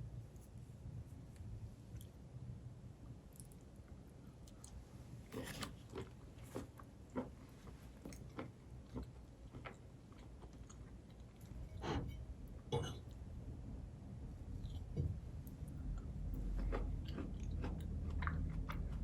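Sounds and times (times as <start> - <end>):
low steady hum: 0.0 - 19.0
person chewing food: 4.3 - 12.2, 14.5 - 19.0.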